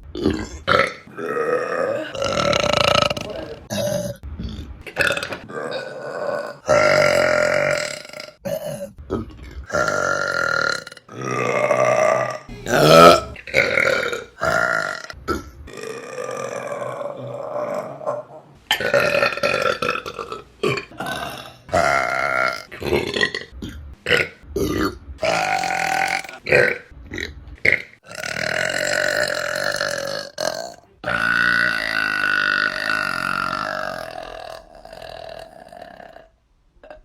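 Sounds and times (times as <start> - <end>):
women burping: 0.2 - 4.2, 5.0 - 23.4, 24.8 - 26.8.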